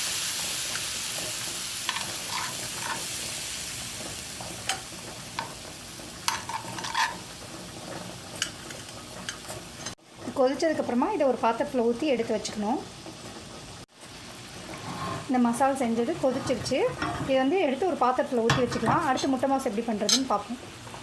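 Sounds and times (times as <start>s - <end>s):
paste sizzling in hot oil: 0.0s - 10.2s.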